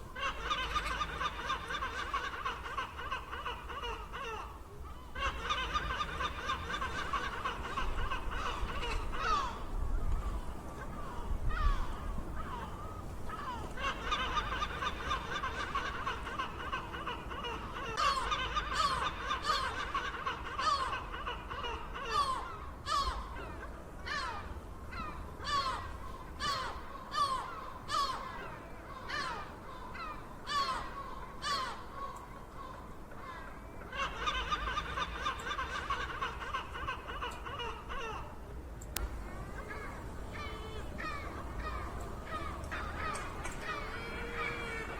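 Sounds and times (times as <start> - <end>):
gulls calling: 0.0 - 44.9.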